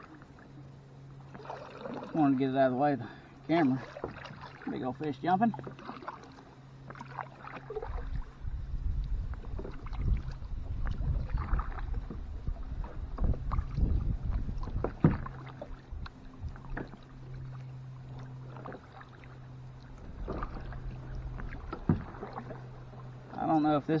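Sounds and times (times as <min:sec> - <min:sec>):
paddle splashing in water: 0:00.0 - 0:02.6, 0:03.4 - 0:23.8
steady low hum: 0:00.0 - 0:24.0
low rumble: 0:07.9 - 0:23.4.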